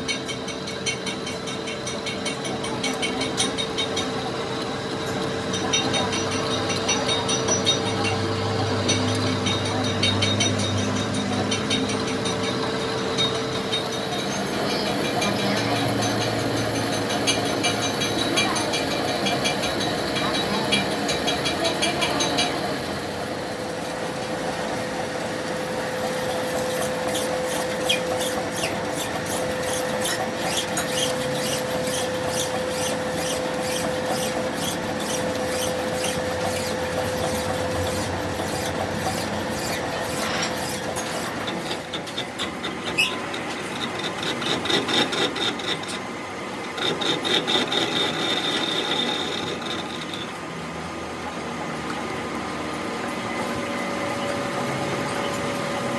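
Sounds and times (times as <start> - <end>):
power tool whining: 24.7 - 50.3.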